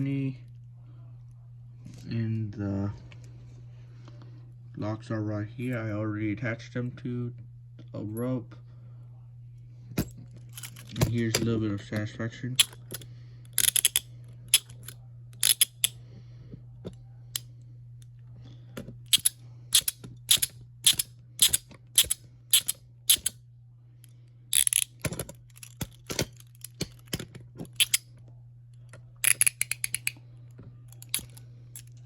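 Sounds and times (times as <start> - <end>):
low hum: 0.0 - 32.0
chain jangling: 10.5 - 11.0
handcuff ratchet clicks: 12.6 - 16.0, 19.1 - 23.4, 24.5 - 28.0, 29.2 - 30.2, 30.9 - 32.0.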